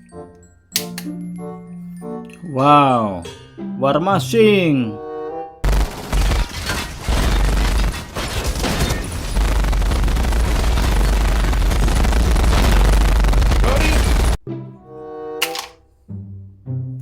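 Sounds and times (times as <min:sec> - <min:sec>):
machine-gun fire: 0:05.6 - 0:14.4.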